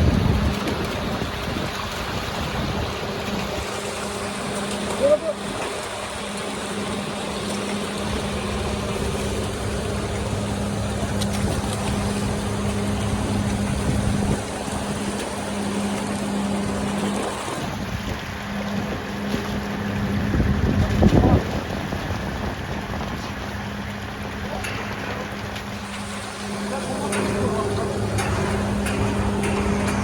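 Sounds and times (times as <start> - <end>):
engine humming: 0.0 - 30.0
water rushing: 0.0 - 30.0
wind: 0.0 - 30.0.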